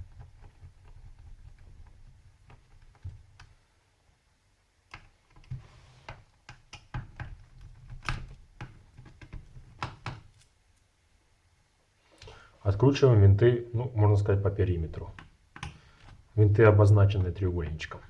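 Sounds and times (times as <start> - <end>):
laptop parts clicking and knocking: 4.9 - 10.4, 15.2 - 16.3.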